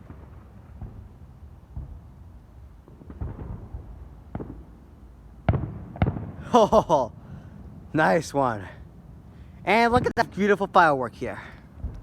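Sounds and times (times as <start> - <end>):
fireworks cracks: 0.0 - 2.1, 2.8 - 4.7, 5.4 - 7.2, 9.7 - 12.0
distant fireworks booms: 0.0 - 12.0.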